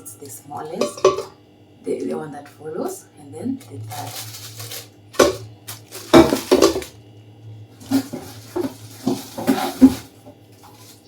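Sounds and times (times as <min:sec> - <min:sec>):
metal pots clanking: 0:00.7 - 0:01.4, 0:03.9 - 0:06.9, 0:07.8 - 0:11.0.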